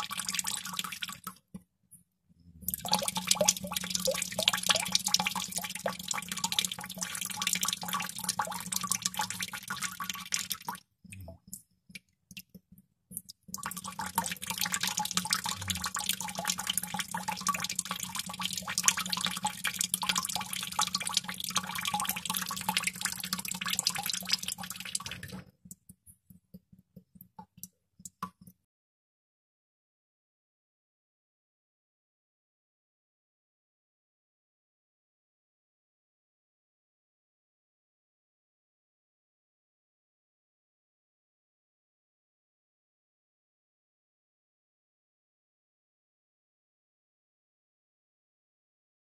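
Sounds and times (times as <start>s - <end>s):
water droplets falling into water: 2.7s - 28.6s.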